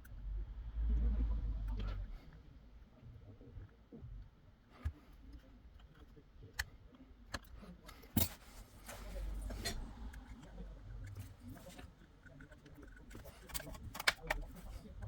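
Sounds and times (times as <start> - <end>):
faint low hum: 0.0 - 15.0
clicks of small parts handled: 7.3 - 15.0.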